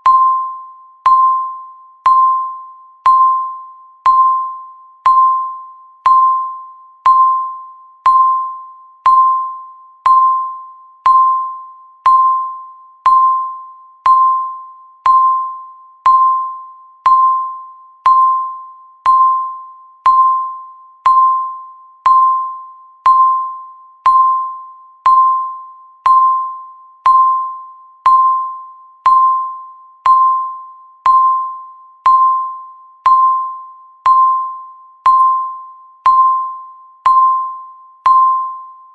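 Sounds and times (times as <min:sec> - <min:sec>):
timer ticking with bell tone: 0:00.0 - 0:38.9.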